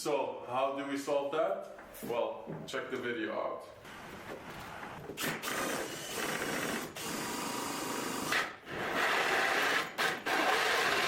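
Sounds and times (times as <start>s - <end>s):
power tool cutting wood: 5.2s - 11.0s.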